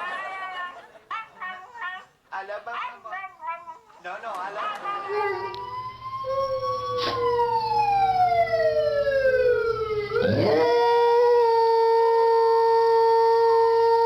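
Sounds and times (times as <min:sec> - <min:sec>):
siren wailing: 0:04.8 - 0:14.0.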